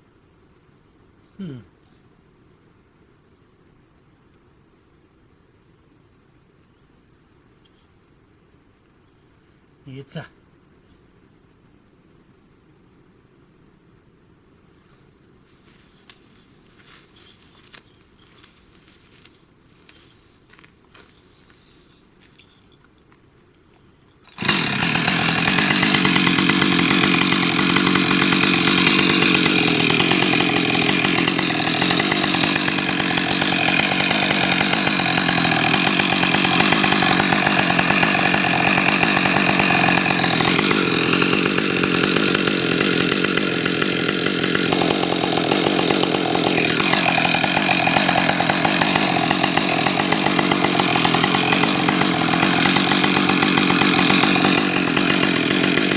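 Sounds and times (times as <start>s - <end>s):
chainsaw running: 16.8s - 21.6s, 24.2s - 55.9s.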